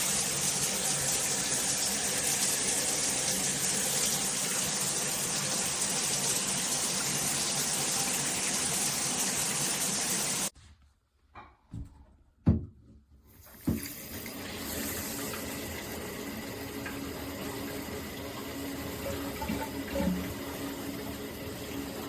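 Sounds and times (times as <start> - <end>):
handling knocks and clunks: 11.3 - 13.8.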